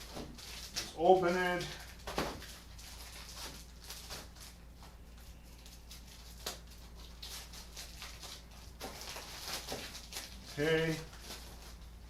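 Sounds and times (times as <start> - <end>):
packaging rustling: 0.0 - 12.0.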